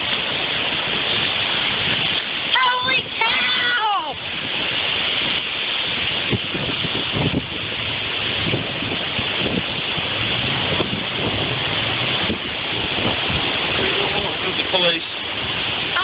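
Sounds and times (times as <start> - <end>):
low rumbling: 0.0 - 16.0
wind buffeting microphone: 0.0 - 16.0
wind rushing: 0.0 - 16.0.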